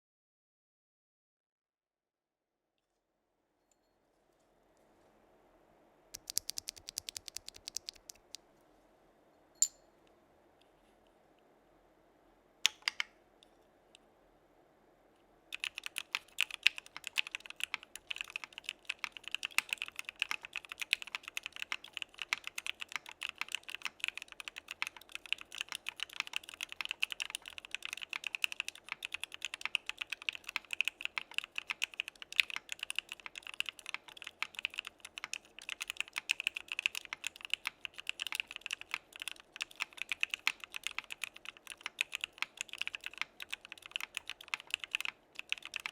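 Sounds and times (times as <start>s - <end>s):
mechanical keyboard typing: 6.2s - 8.4s, 12.7s - 13.1s, 15.5s - 45.9s.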